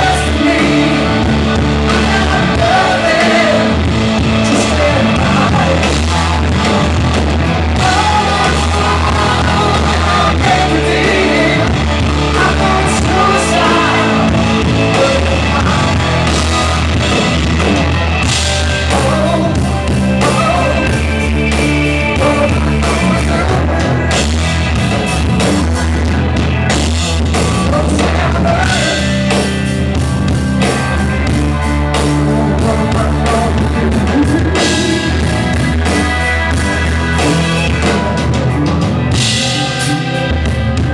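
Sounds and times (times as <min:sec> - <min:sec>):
male lead vocal singing: 0:00.0 - 0:16.4, 0:18.8 - 0:24.0, 0:27.6 - 0:29.3, 0:32.0 - 0:35.4
bass: 0:00.0 - 0:40.9
drums: 0:00.0 - 0:40.9
electric guitar: 0:00.0 - 0:40.9.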